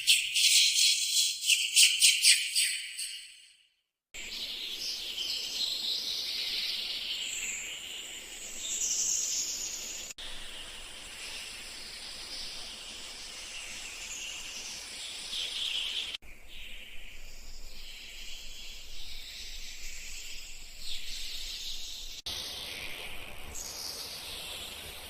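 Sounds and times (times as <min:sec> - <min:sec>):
birds chirping and calling: 0:00.0 - 0:03.4
steady high hiss: 0:04.2 - 0:25.0.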